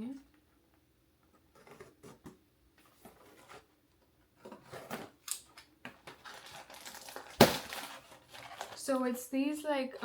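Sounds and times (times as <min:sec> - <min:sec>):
package rustling and scraping: 0:01.4 - 0:03.8, 0:04.4 - 0:09.0.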